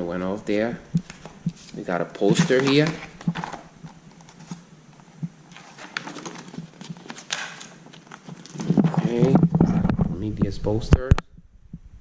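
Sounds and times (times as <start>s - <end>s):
paper rustling: 1.0s - 9.4s.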